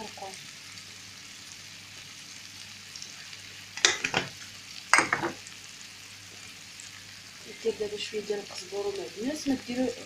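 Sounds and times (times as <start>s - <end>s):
food sizzling in hot oil: 0.0s - 10.0s
utensil clinking and scraping pot: 3.8s - 5.4s.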